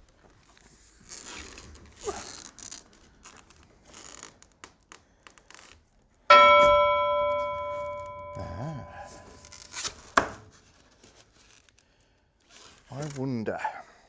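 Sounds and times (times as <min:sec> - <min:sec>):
metallic clang ringing: 0:06.3 - 0:09.4.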